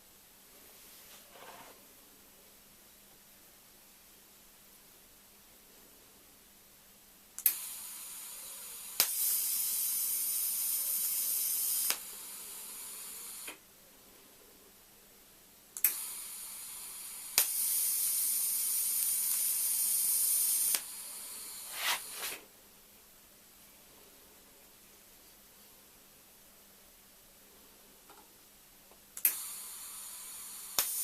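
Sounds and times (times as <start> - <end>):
welder click: 7.4 - 7.7, 9.0 - 9.7, 15.8 - 16.1, 17.3 - 21.0, 29.2 - 31.0
welding arc hissing: 7.4 - 13.6, 15.8 - 22.4, 29.2 - 31.0.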